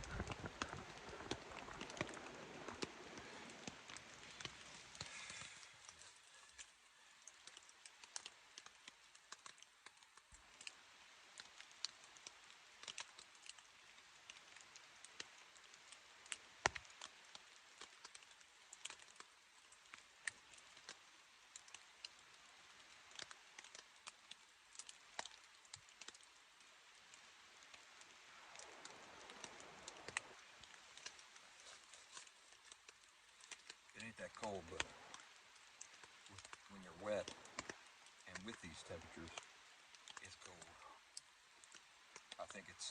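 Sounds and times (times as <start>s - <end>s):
rain pattering on tent fabric: 0.0s - 42.9s.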